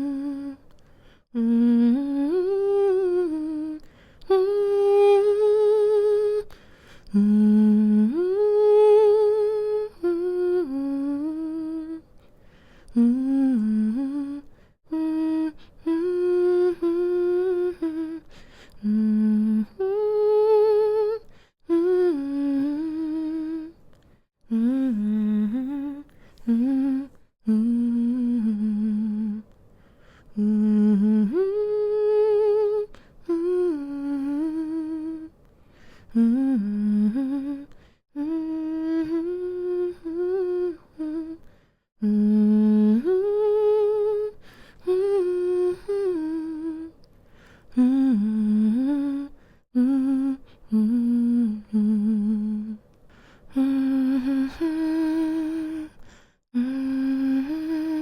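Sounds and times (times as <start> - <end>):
woman humming a lullaby: 0.0 - 0.6, 36.1 - 41.4.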